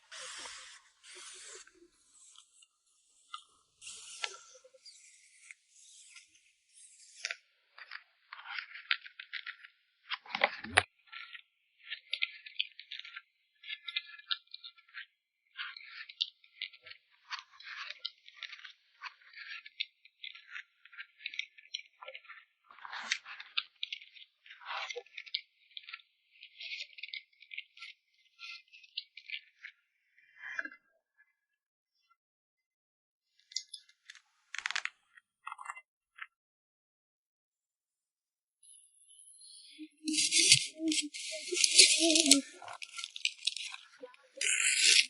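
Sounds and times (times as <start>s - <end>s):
plastic packaging crinkling: 40.1s - 45.0s.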